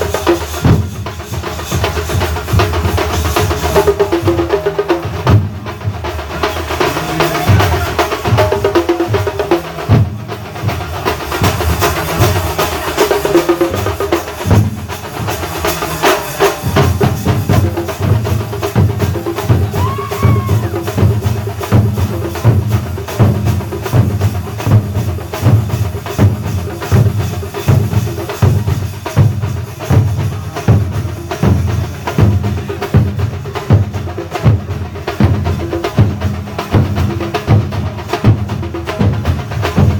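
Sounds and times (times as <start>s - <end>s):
heavy low drum strokes: 0.0s - 39.9s
percussion ensemble drumming: 0.0s - 39.9s.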